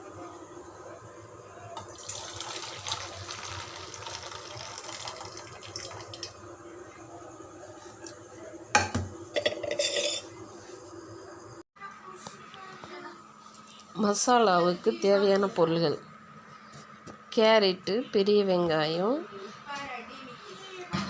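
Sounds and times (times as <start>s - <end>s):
water pouring into a bowl: 1.8s - 6.4s.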